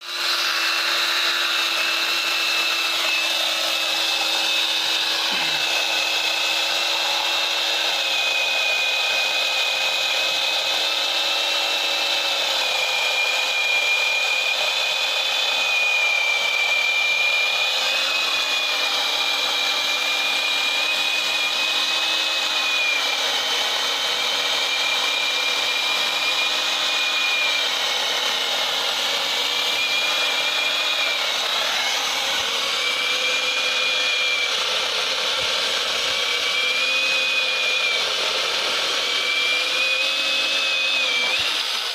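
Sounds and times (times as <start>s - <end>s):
power saw motor whine: 0.0s - 41.9s
chain rasping through wood: 0.6s - 8.3s.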